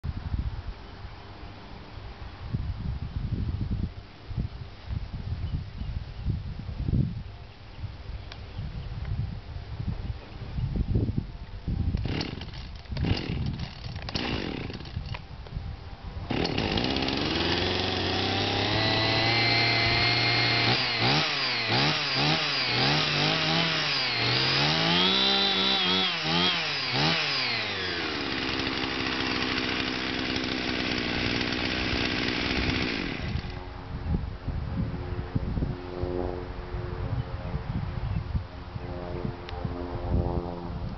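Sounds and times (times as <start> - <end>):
chainsaw engine revving: 12.0 - 15.2, 16.3 - 33.6.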